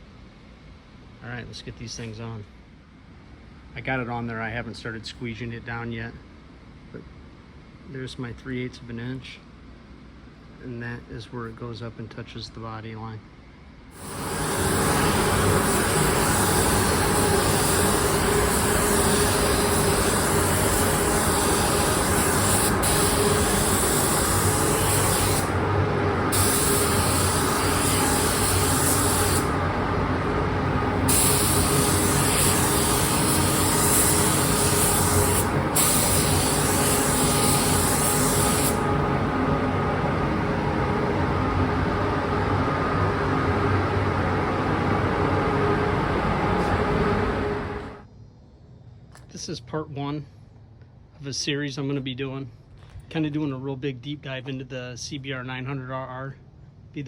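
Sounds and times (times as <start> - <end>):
paint spray gun hissing: 14.0 - 39.2.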